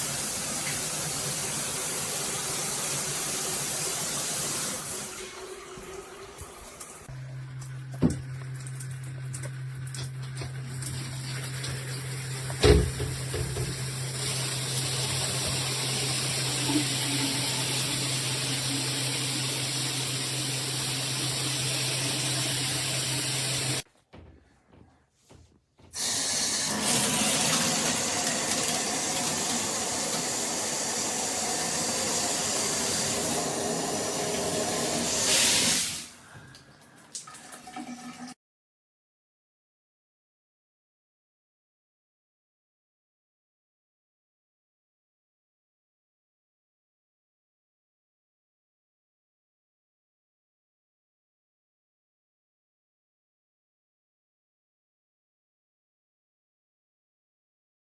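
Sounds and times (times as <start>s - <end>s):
shower water spraying: 0.0s - 23.8s, 26.0s - 36.2s.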